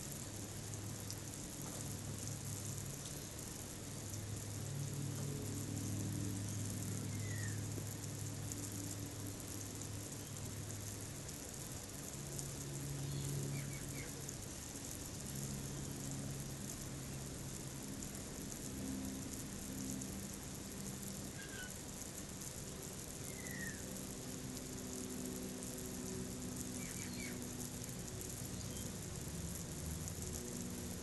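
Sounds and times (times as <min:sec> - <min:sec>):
steady high hiss: 0:00.0 - 0:31.0
faint bird chirps: 0:05.8 - 0:07.7, 0:13.0 - 0:14.2, 0:21.3 - 0:21.8, 0:23.2 - 0:23.9, 0:26.7 - 0:27.4, 0:28.5 - 0:29.0.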